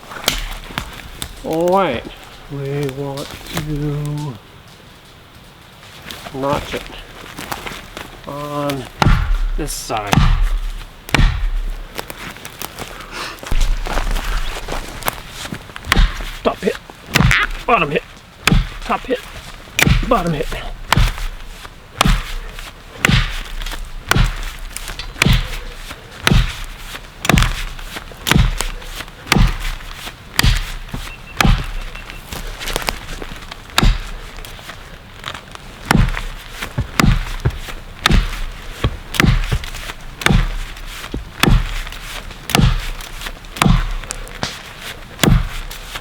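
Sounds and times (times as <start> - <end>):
axe chopping tree: 0.1 - 1.6, 8.6 - 12.1, 13.5 - 34.7, 35.8 - 46.0.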